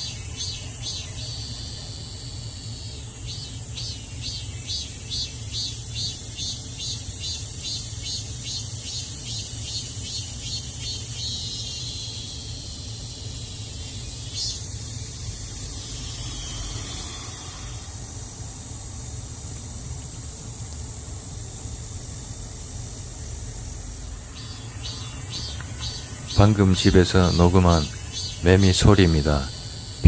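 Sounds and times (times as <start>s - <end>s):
cicadas buzzing: 0.0s - 30.0s.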